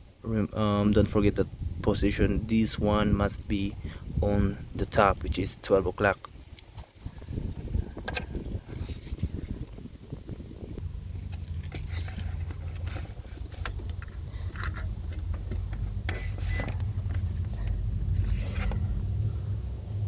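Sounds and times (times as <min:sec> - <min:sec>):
low rumble: 0:07.0 - 0:20.0
small clicks and scrapes: 0:07.6 - 0:09.8, 0:11.2 - 0:19.0.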